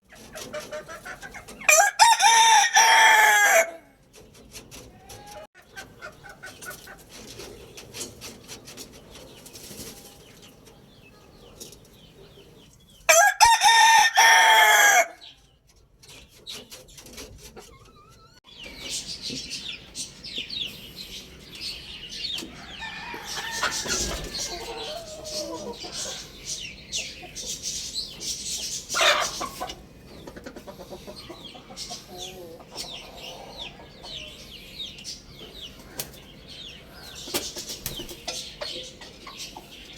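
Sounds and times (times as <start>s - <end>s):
small birds chirping: 0.0s - 1.7s, 4.0s - 13.1s, 15.2s - 39.9s
chickens clucking: 0.0s - 39.9s
rooster crowing: 1.7s - 3.9s, 13.1s - 15.2s, 22.5s - 25.8s.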